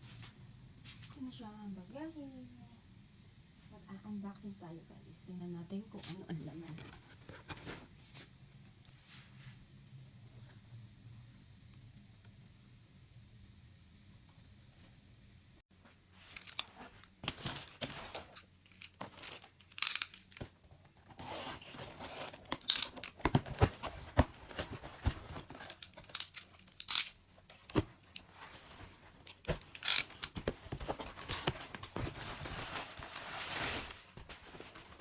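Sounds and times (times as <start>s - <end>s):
packaging crinkling and rustling: 16.2s - 35.0s.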